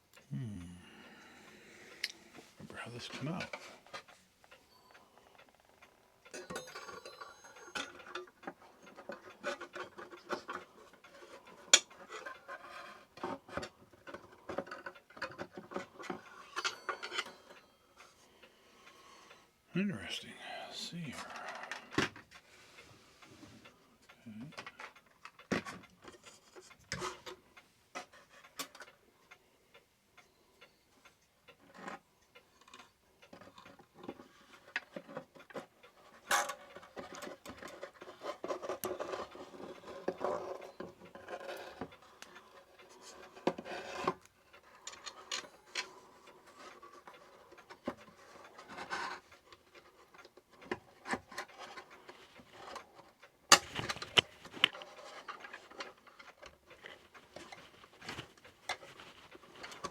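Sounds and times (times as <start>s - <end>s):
clicks and knocks on clock parts: 6.3s - 18.2s, 24.6s - 29.0s, 31.1s - 59.9s.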